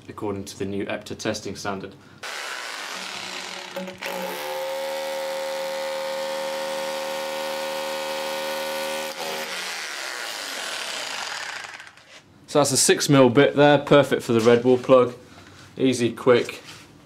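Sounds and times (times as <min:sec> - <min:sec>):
hammer drill boring into concrete: 0:02.2 - 0:12.2.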